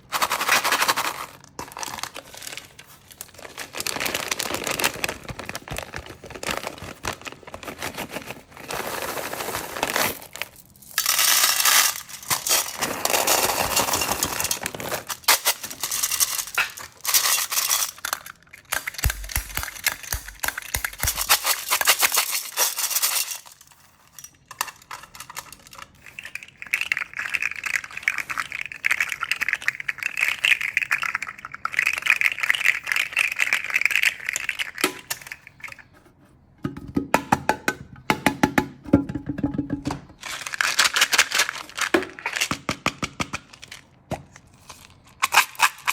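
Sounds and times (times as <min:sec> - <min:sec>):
plastic packaging crumpling: 0:00.1 - 0:23.8, 0:40.1 - 0:42.6
high-pitched rattle: 0:15.3 - 0:27.6.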